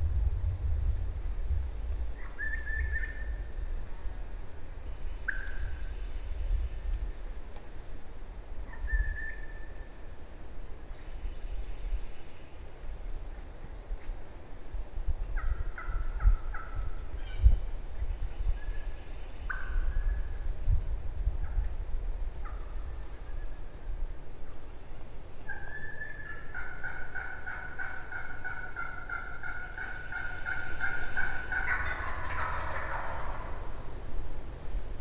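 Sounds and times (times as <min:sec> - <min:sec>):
low rumble: 0:00.0 - 0:02.2
turkey gobble: 0:05.2 - 0:05.8, 0:15.4 - 0:17.5, 0:19.4 - 0:20.1, 0:25.4 - 0:33.8
turkeys yelping: 0:15.4 - 0:17.4, 0:25.4 - 0:33.8.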